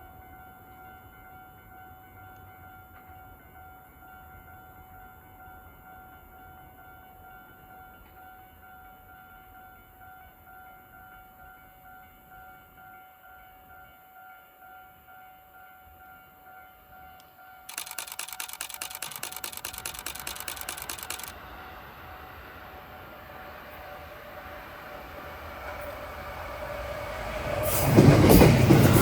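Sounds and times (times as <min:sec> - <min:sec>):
camera shutter burst: 0:17.7 - 0:21.3
train rumble: 0:17.8 - 0:29.0.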